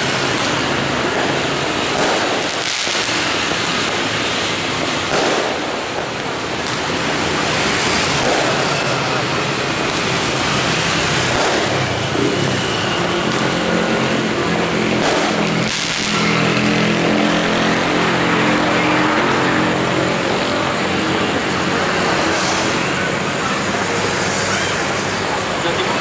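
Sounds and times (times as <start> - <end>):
outdoor background noise: 0.0 - 26.0
diesel locomotive engine humming: 8.1 - 26.0.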